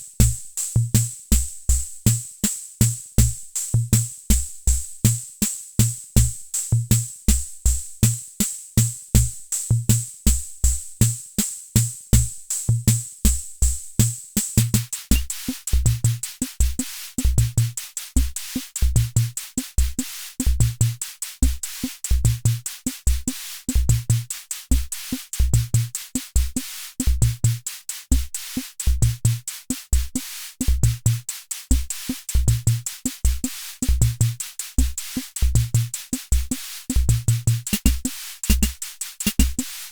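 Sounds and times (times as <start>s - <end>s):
hi-hat ticks: 0.0s - 16.6s, 30.4s - 39.9s
electronic drum thumps: 15.1s - 15.3s, 37.7s - 39.6s.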